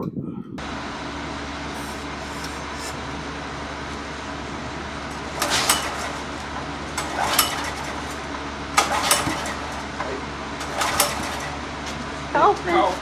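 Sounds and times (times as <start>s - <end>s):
metallic clinks and rattles: 5.1s - 13.0s.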